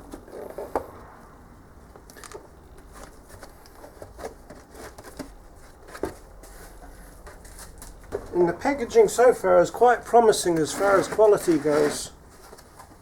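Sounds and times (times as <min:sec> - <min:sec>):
packaging clicks and rustles: 0:02.0 - 0:08.4.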